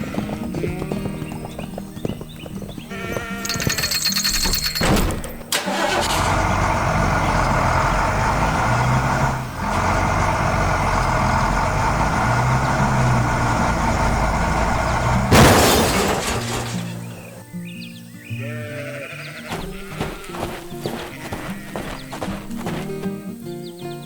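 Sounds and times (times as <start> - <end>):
heavy vehicle engine humming: 4.4 - 17.4.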